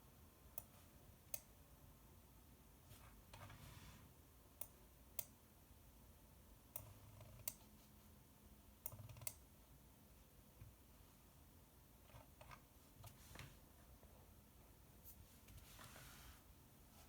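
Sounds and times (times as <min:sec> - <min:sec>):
computer mouse clicking: 0:06.8 - 0:07.7, 0:08.8 - 0:09.4.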